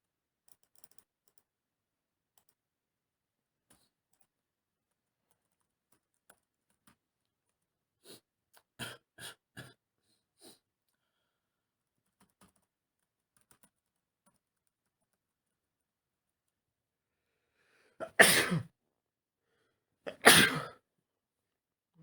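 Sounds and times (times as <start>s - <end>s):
computer keyboard typing: 0.5s - 1.4s.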